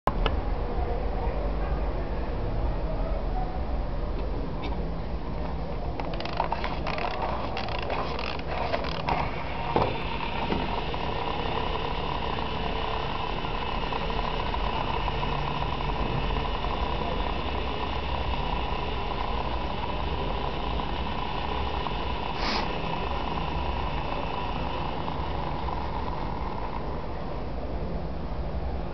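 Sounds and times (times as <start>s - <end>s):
wind-up toy motor whirring: 5.8s - 27.2s.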